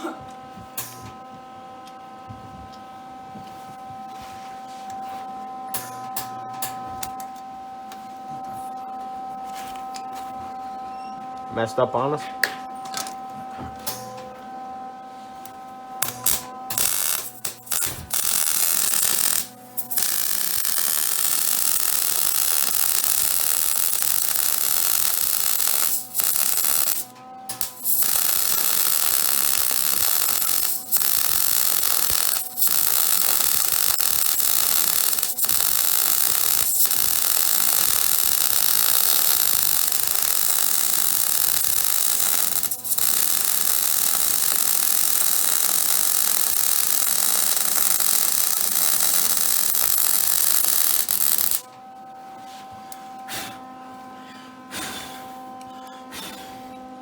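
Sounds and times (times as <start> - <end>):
welder arc crackling: 16.0 - 51.7.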